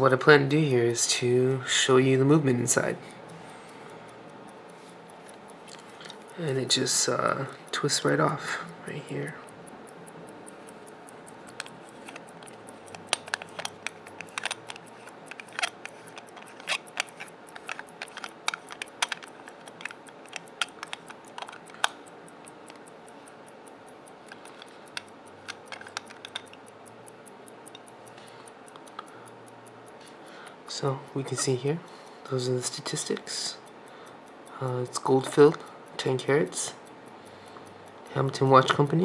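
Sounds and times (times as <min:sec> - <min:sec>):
fast watch ticking: 0:00.0 - 0:39.0
small metal clicks and taps: 0:10.0 - 0:30.4, 0:31.1 - 0:39.0.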